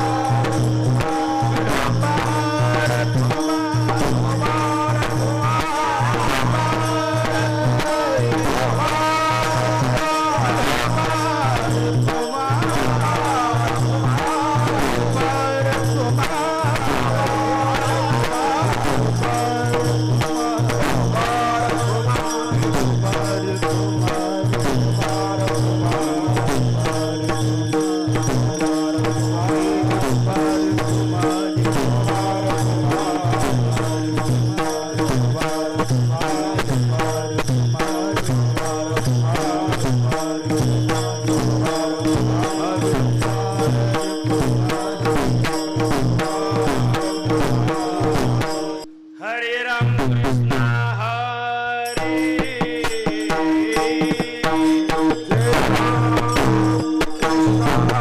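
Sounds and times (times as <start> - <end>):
hand cymbals: 0.0 - 49.5, 51.8 - 58.0
drum rhythm: 51.9 - 58.0.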